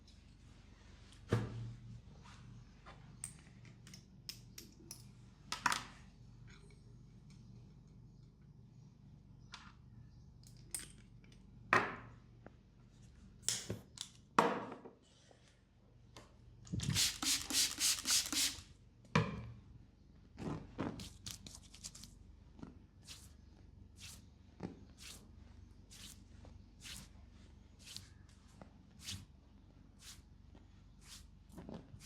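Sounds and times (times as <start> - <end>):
hands rubbing and slapping skin: 26.8 - 27.1, 29.0 - 29.2, 30.0 - 30.2.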